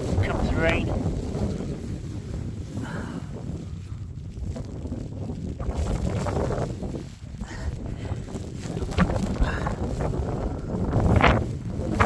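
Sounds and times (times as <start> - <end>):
wind buffeting microphone: 0.0 - 12.0
rustling: 3.7 - 12.0.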